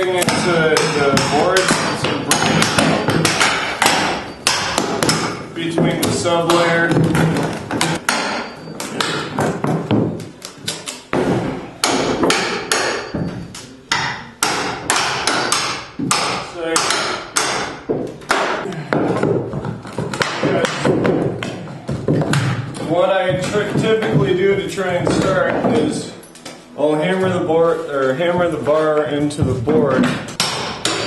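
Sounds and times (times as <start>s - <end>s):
hammer striking metal bar: 0.0s - 6.8s, 7.7s - 9.5s, 10.7s - 18.7s, 30.0s - 31.0s
floorboards knocking: 0.0s - 13.5s, 14.5s - 26.1s.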